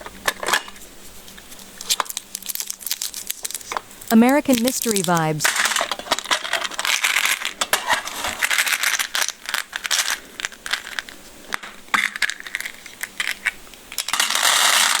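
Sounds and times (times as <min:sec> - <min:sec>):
can contents rattling and crinkling: 0:01.5 - 0:04.1.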